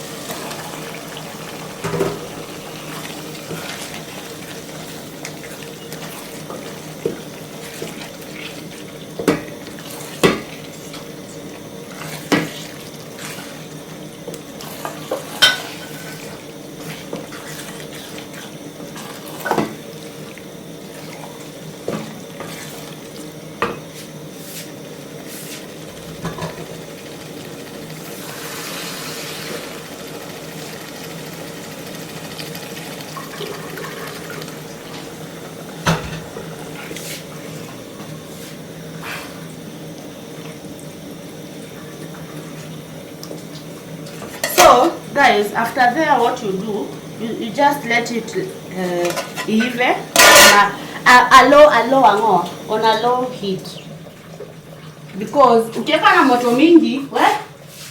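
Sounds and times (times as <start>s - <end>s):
low background hum: 0.0s - 57.9s
utensil scraping and knocking pot: 49.0s - 50.7s.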